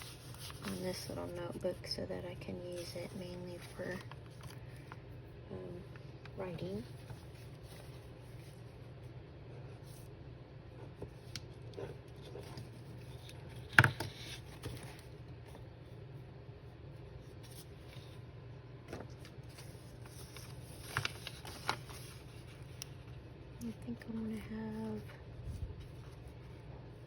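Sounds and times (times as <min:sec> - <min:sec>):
paper rustling: 0:00.0 - 0:01.7, 0:02.6 - 0:05.0, 0:18.9 - 0:23.2
low steady hum: 0:00.0 - 0:27.0.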